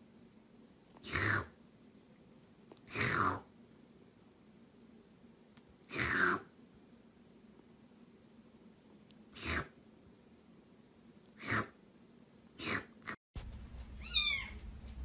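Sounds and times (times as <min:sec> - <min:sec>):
pet sneezing: 0:02.9 - 0:03.4, 0:05.9 - 0:06.5, 0:09.3 - 0:09.7, 0:11.4 - 0:11.8, 0:12.6 - 0:13.2
cat meowing: 0:14.0 - 0:14.6.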